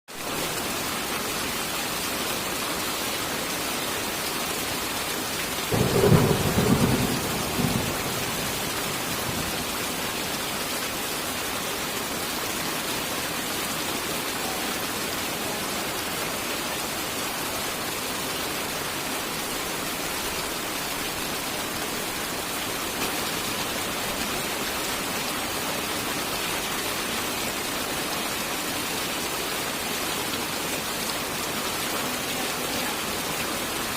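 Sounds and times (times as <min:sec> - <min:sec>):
steady rain: 0:00.1 - 0:33.9
thunder rumble: 0:05.7 - 0:10.2.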